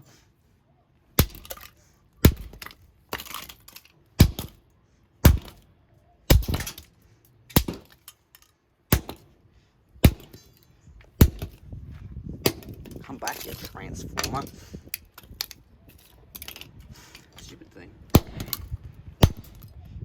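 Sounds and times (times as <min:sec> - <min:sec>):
crackle of breaking pieces: 0:01.2 - 0:04.5.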